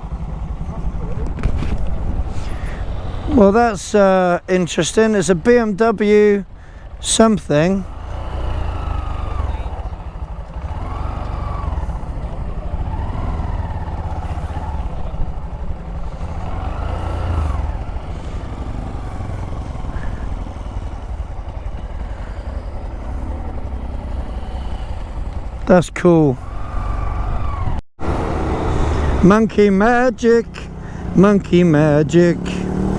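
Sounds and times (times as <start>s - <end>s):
motorcycle engine running: 0.0s - 32.9s
wind rumble on microphone: 0.6s - 2.8s.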